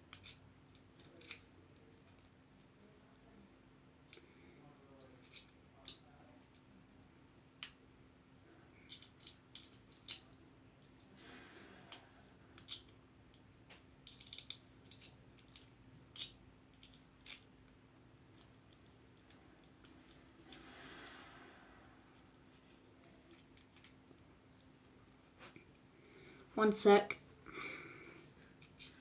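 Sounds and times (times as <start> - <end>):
lock picks clicking and scraping: 0.1 - 2.3, 5.0 - 6.0, 8.8 - 11.0, 12.6 - 13.0, 14.0 - 17.6, 23.0 - 24.0, 28.5 - 29.0.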